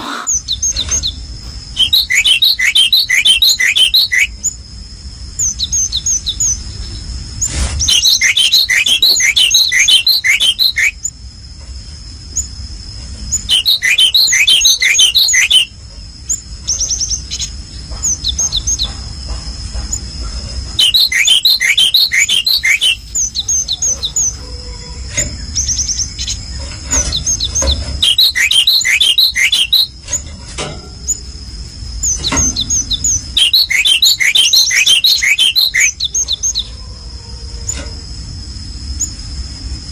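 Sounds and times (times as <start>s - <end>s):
songbird chirping: 0.0s - 30.3s, 31.0s - 37.9s
steady high-pitched tone: 33.4s - 36.0s.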